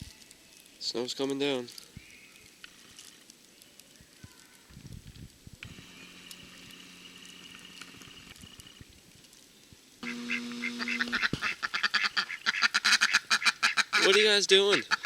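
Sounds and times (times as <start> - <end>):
faint steady hum: 4.8 - 12.9
ducks quacking: 10.0 - 15.0.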